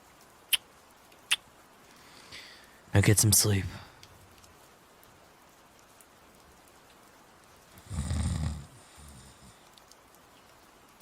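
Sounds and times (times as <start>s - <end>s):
soft breath: 1.8s - 2.9s, 8.7s - 9.8s
person snoring: 7.8s - 9.3s.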